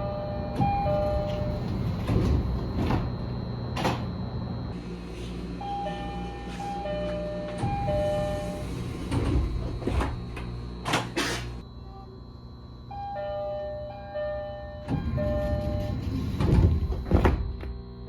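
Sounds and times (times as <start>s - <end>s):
two-tone door chime: 0.0s - 3.3s, 5.6s - 9.4s, 12.9s - 17.0s
low train hum: 0.0s - 18.0s
sliding doors swishing and knocking: 0.6s - 4.1s, 4.7s - 11.6s, 14.9s - 17.7s.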